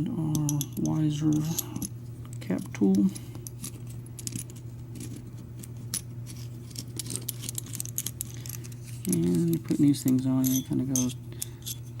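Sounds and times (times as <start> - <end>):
steady low hum: 0.0 - 12.0
small metallic clicks and jingling: 10.0 - 11.8.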